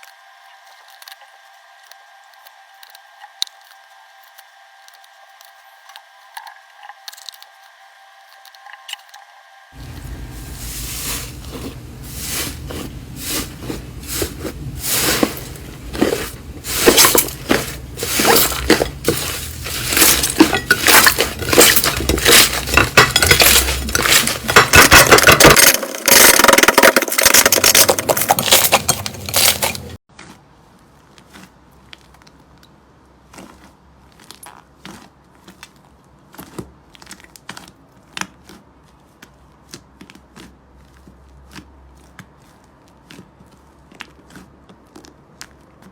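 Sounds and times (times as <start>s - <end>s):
slime crackling and popping: 14.9s - 30.4s.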